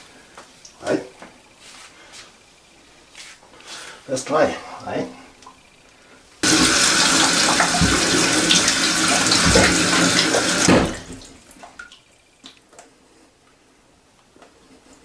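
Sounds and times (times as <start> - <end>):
water rushing into cistern: 6.4 - 11.9.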